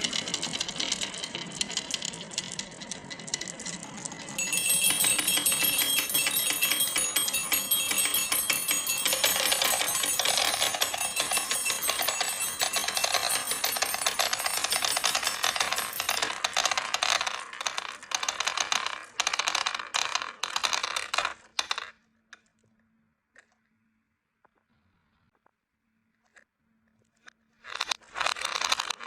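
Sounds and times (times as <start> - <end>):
marbles clattering down a track: 0.0 - 21.9, 27.7 - 29.0.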